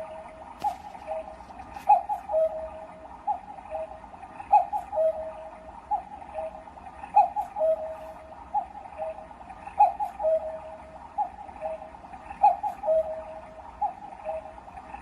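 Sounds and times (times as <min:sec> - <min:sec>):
cuckoo clock calling: 0:00.0 - 0:15.0.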